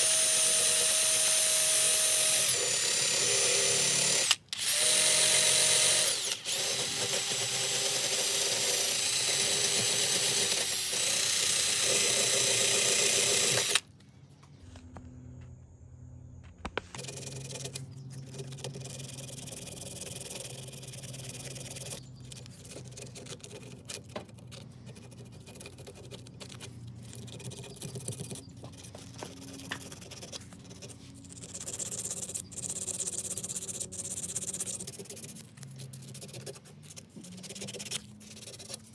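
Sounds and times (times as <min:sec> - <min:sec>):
power tool whirring: 0:00.0 - 0:13.9
clicks and rubbing: 0:16.4 - 0:18.7.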